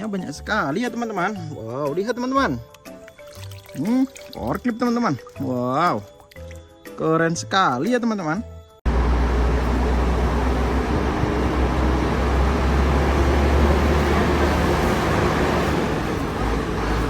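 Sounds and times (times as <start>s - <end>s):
vehicle low rumble: 8.9s - 17.0s.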